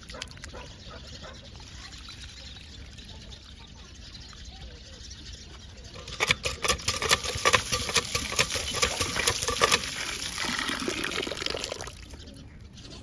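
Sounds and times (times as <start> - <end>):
metal spoon scraping a pot: 5.9 - 10.1.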